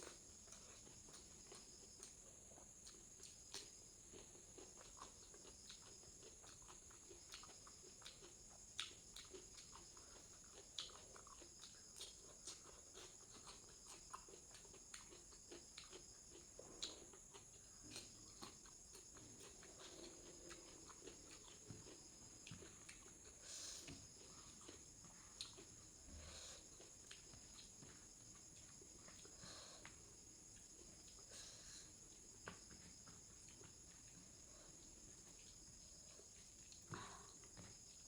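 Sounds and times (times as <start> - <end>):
person chewing: 0.2 - 29.6.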